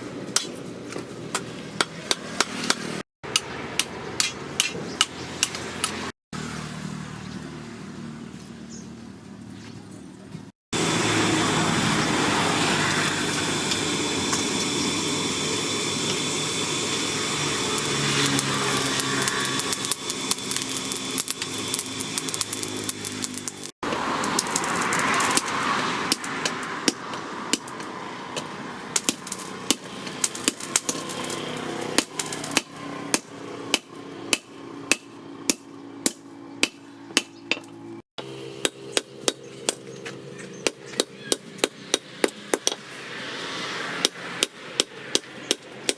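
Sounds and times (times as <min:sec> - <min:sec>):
loud mechanical noise: 0:00.0 - 0:09.4, 0:10.3 - 0:45.9
hammer striking steel on anvil: 0:01.8 - 0:06.0, 0:32.0 - 0:37.8, 0:38.6 - 0:39.9, 0:40.6 - 0:42.8.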